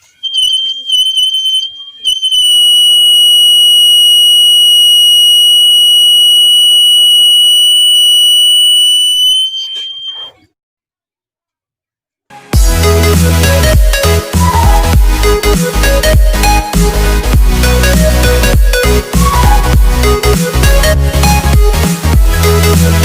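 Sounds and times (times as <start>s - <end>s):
fire alarm buzzer high-pitched tone: 0.1s - 10.5s.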